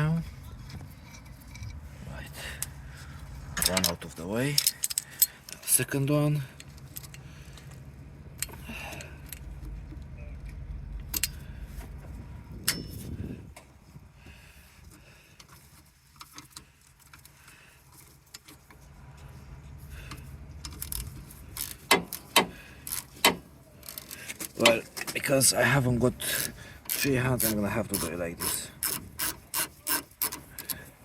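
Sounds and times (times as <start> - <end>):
low rumble: 6.6 - 14.2
metallic clicks of hand tools: 26.4 - 30.8.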